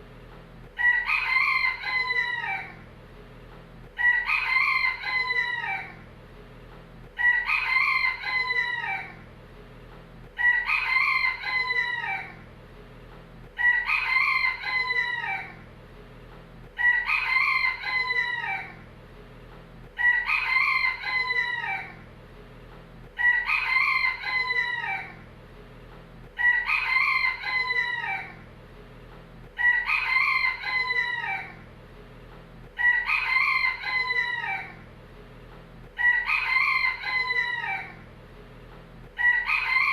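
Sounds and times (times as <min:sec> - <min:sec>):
faint low hum: 0:00.0 - 0:39.9
rooster crowing: 0:00.8 - 0:02.8, 0:04.0 - 0:06.0, 0:07.2 - 0:09.2, 0:10.4 - 0:12.4, 0:13.6 - 0:15.6, 0:16.8 - 0:18.8, 0:20.0 - 0:22.0, 0:23.2 - 0:25.2, 0:26.4 - 0:28.4, 0:29.6 - 0:31.6, 0:32.8 - 0:34.8, 0:36.0 - 0:38.0, 0:39.2 - 0:39.9.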